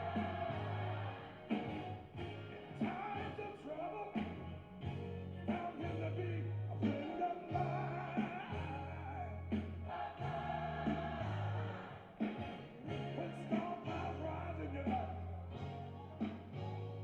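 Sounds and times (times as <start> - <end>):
gospel singing: 0.0 - 17.0.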